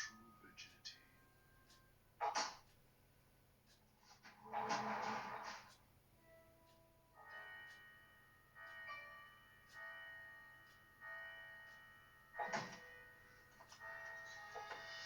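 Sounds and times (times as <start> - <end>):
faint bell-like chimes: 6.2 - 15.0.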